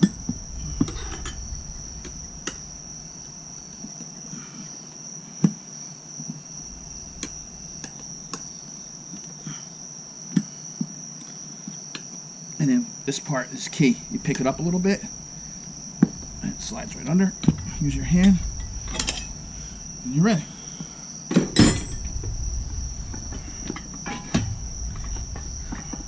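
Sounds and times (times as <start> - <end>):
crickets trilling: 0.0 - 26.0
metal clinks and knocks: 17.4 - 19.9, 21.4 - 26.0.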